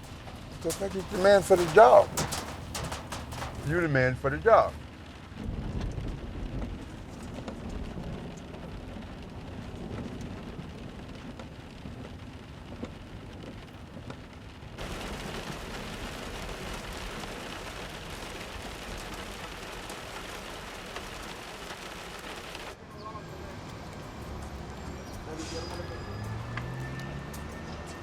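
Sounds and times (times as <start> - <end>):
low rumble: 0.0 - 3.8
steady hiss: 0.0 - 3.8.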